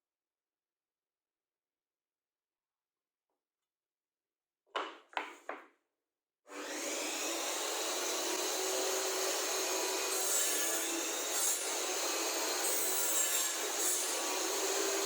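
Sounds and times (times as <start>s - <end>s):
power tool cutting wood: 6.5s - 15.0s.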